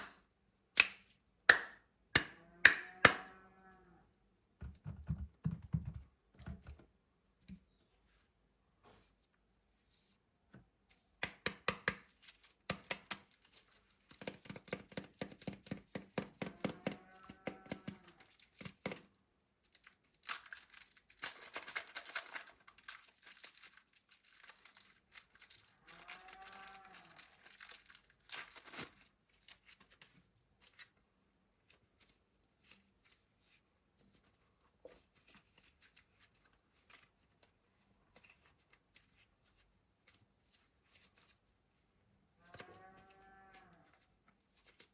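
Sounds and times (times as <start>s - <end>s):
plastic packaging crinkling: 17.9s - 30.8s.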